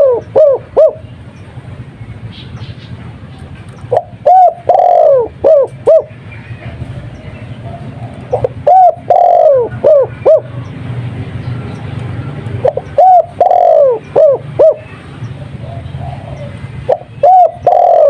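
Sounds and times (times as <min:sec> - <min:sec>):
dove cooing: 0:00.0 - 0:01.1, 0:03.8 - 0:06.8, 0:07.5 - 0:10.6, 0:12.6 - 0:18.0.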